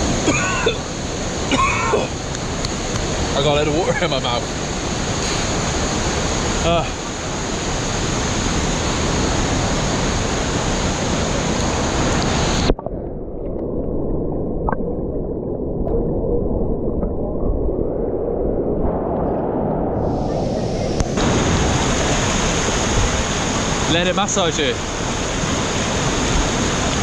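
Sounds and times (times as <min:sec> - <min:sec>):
waterfall pounding: 0:00.0 - 0:12.7, 0:21.0 - 0:27.0
muffled underwater rush: 0:00.0 - 0:27.0.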